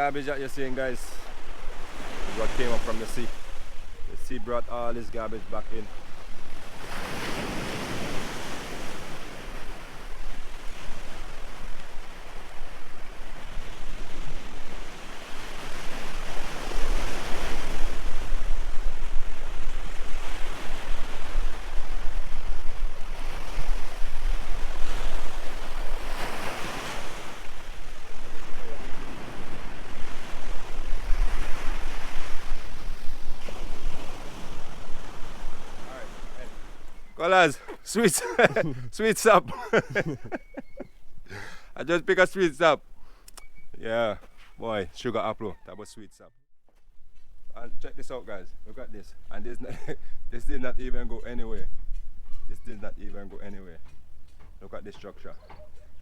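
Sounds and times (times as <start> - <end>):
sea waves breaking: 0.0 - 44.0
wind rumbling on microphone: 5.9 - 37.1.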